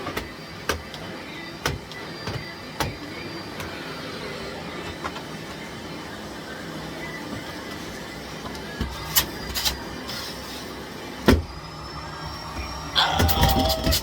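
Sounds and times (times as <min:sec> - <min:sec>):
vacuum cleaner running: 0:00.0 - 0:14.0.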